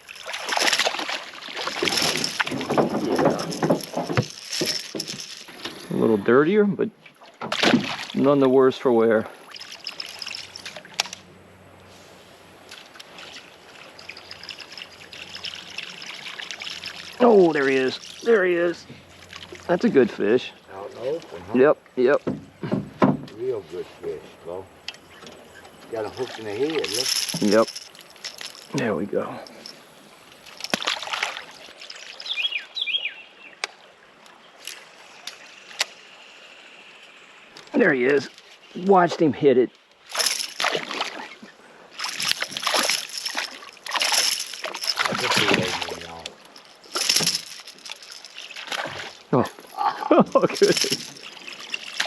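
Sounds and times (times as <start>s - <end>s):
tackle clattering: 0.0s - 5.9s, 9.6s - 11.2s, 12.7s - 18.8s, 26.0s - 29.8s, 40.1s - 41.2s, 42.0s - 52.0s
water trickling and lapping: 0.0s - 52.0s
bird calling: 23.4s - 33.6s.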